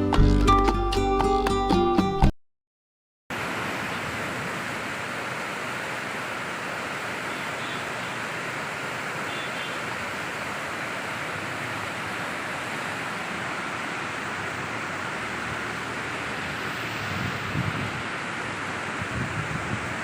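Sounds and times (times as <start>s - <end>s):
river water rushing: 3.3s - 20.0s
wind buffeting microphone: 16.2s - 18.2s, 18.9s - 20.0s.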